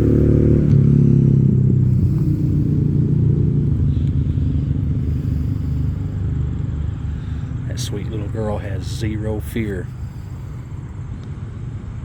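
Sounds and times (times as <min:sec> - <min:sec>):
engine idling: 0:01.2 - 0:12.0.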